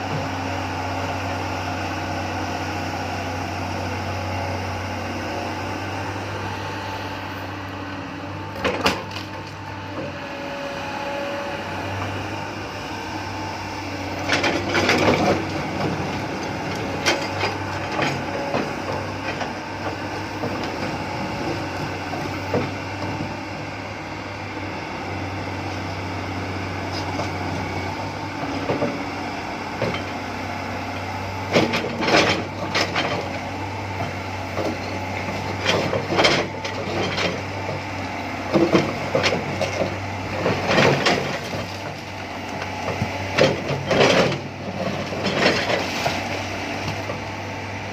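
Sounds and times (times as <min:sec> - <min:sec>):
excavator diesel engine running: 0:00.0 - 0:47.9
excavator bucket knocking and cracking: 0:31.5 - 0:33.4, 0:38.5 - 0:47.2.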